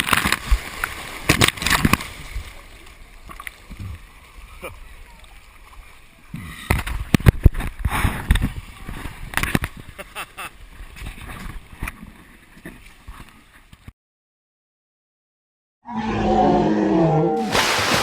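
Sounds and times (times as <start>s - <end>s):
water rushing and splashing: 0.0s - 7.1s, 17.4s - 18.0s.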